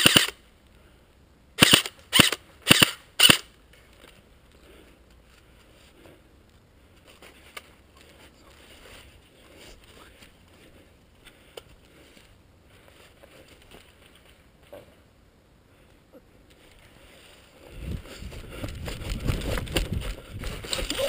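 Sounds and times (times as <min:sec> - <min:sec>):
airsoft rifle firing bursts: 0:00.0 - 0:00.4, 0:01.6 - 0:03.5
faint background noise: 0:00.0 - 0:21.0.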